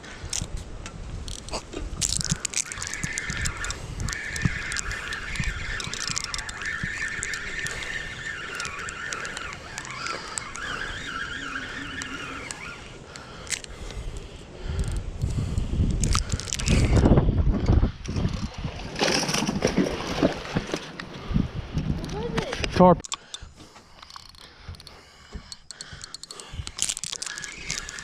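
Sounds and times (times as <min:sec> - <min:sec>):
reel clicks: 0:00.2 - 0:19.5, 0:21.7 - 0:28.0
fishing reel whirring: 0:01.2 - 0:17.1, 0:23.1 - 0:28.0.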